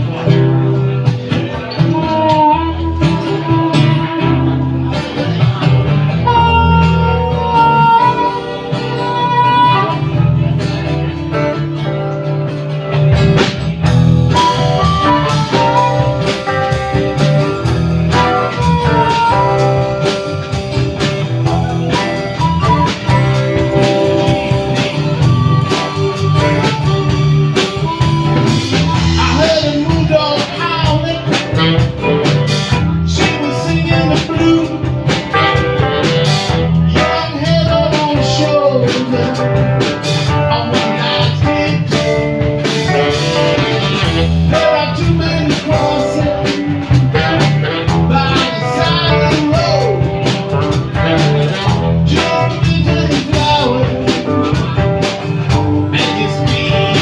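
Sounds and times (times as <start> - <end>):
blues band playing: 0.0 - 57.0
wavering melody line: 14.1 - 30.2.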